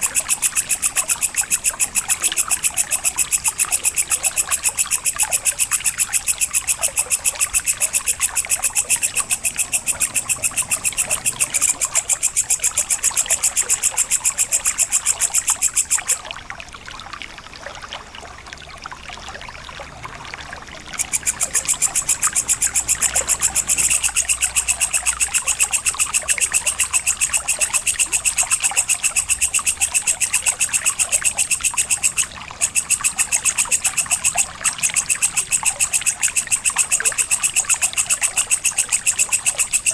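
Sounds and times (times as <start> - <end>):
insect stridulating: 0.0 - 16.4, 20.0 - 39.9.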